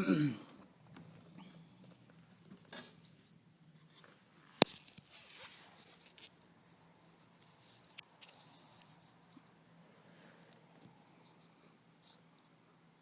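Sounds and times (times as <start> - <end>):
screwdriver clicking and scraping: 4.6 - 5.5.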